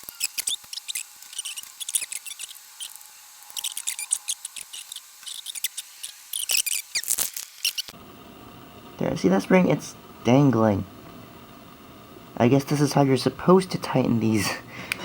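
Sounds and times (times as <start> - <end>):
small parts clicking and scratching: 0.0 - 8.0.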